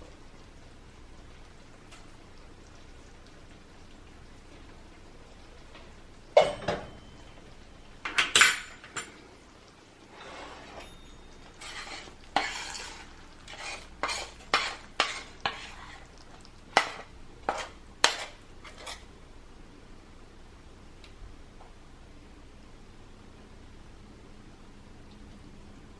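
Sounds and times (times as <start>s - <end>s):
metal utensils clinking on dishes: 6.4s - 7.3s, 8.0s - 9.2s, 10.1s - 15.8s.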